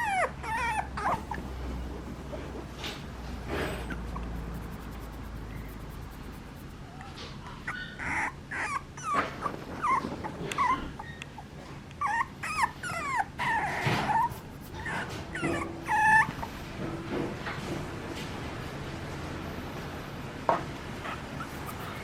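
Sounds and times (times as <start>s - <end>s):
puppy whimpering and whining: 0.0s - 4.8s, 7.6s - 16.6s, 21.0s - 22.0s
puppy yelp: 0.0s - 6.7s, 7.4s - 16.5s, 21.0s - 22.0s.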